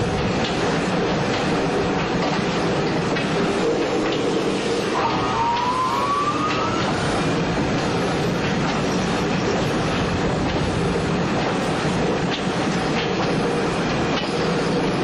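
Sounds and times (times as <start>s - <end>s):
roller coaster clicks: 0.0s - 15.0s
roller coaster rumbling on track: 0.0s - 15.0s
rising squeal: 4.9s - 7.2s.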